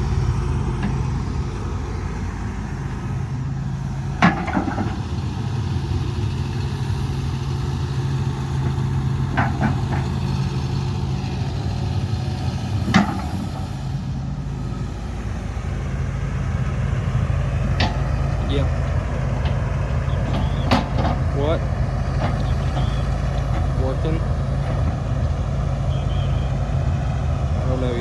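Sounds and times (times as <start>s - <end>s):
excavator diesel engine running: 0.0s - 28.0s
sharp metallic knocks: 12.8s - 13.6s.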